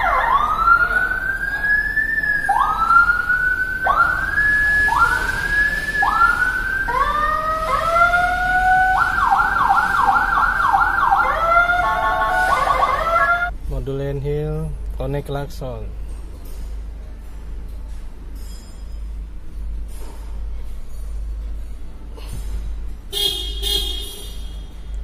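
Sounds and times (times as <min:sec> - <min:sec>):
electronic siren wailing and yelping: 0:00.0 - 0:13.5.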